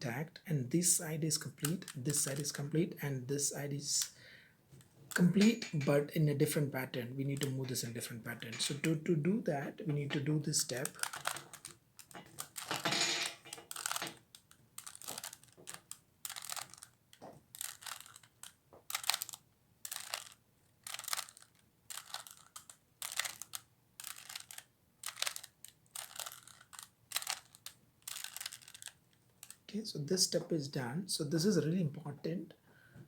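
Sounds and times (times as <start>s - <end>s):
puzzle cube clacking turns: 1.6s - 2.6s, 7.3s - 29.7s.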